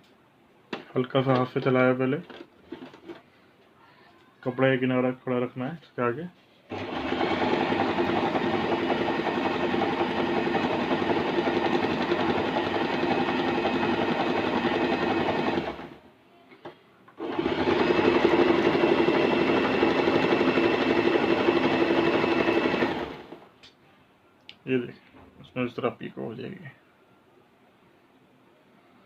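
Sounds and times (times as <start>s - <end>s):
sewing machine stitching: 6.7s - 16.0s, 17.2s - 23.4s.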